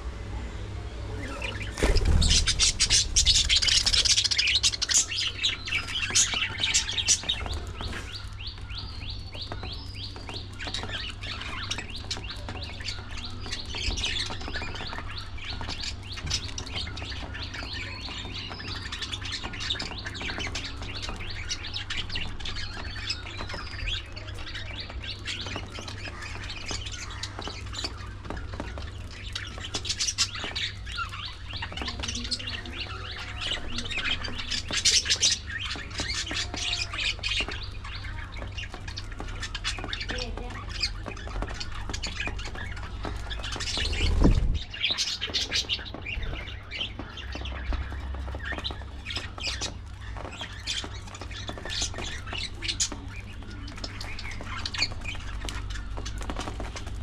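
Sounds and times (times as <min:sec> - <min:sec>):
budgerigars chattering and chirping: 0:01.2 - 0:57.0.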